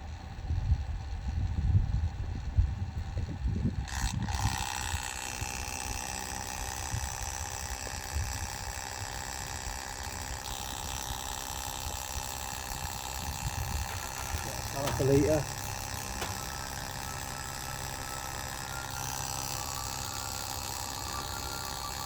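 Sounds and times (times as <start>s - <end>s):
oil pumping: 10.5s - 22.0s.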